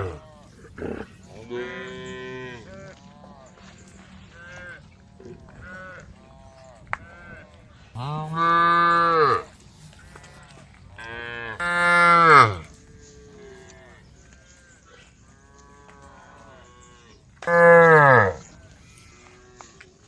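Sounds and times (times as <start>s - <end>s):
cow mooing loudly: 0.0s - 3.4s, 8.0s - 9.6s, 11.0s - 14.0s, 17.4s - 19.1s
faint moos from herd: 0.0s - 20.0s.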